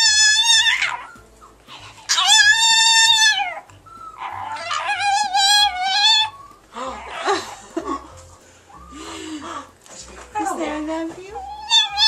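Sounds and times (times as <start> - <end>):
small dog howling: 0.0 - 1.2, 2.1 - 7.5, 11.4 - 12.0.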